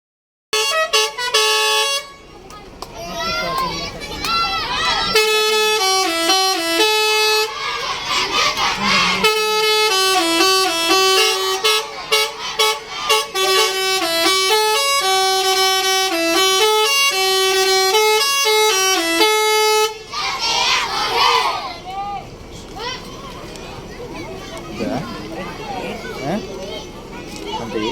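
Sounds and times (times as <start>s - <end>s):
bus musical horn tune: 0.5s - 2.4s, 4.8s - 21.6s
people shouting: 3.0s - 23.3s.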